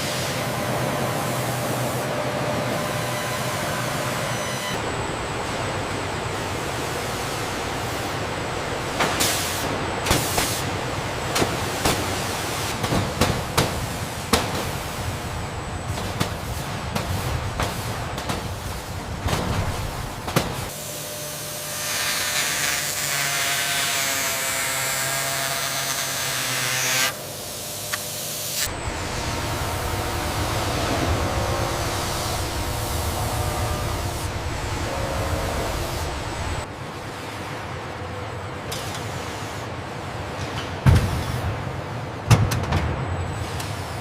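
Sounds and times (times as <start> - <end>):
rushing industrial noise: 0.0 - 21.2, 27.1 - 38.8.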